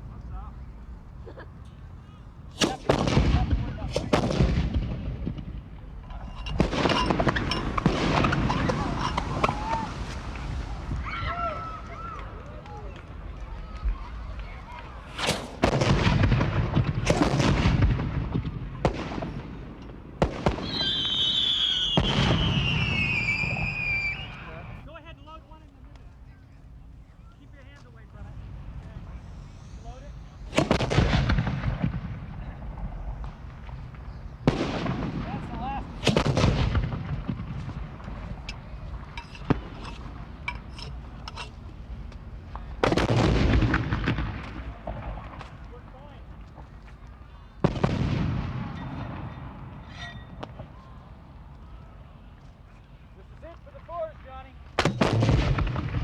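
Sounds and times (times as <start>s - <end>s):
sharp gunshots: 2.5s - 5.7s, 6.5s - 9.5s, 15.0s - 20.9s, 30.5s - 33.6s, 34.4s - 38.5s, 42.8s - 45.4s, 54.8s - 56.0s
high falling whistle: 20.6s - 24.8s.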